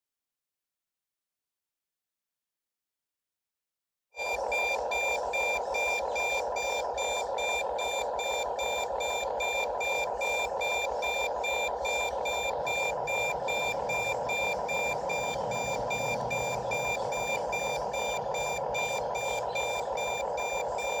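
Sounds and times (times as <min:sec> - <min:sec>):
rapid electronic beeps: 0:04.2 - 0:21.0
steady droning hum: 0:04.2 - 0:21.0.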